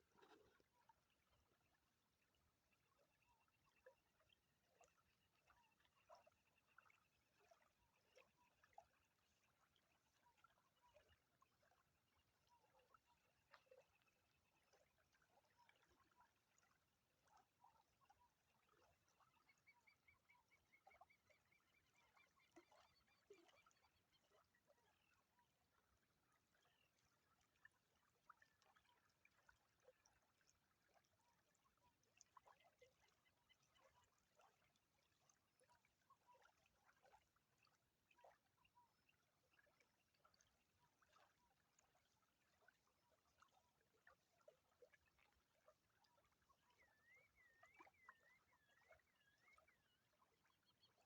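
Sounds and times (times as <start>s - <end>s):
faint chirps and calls: 17.4s - 27.8s, 31.0s - 51.0s.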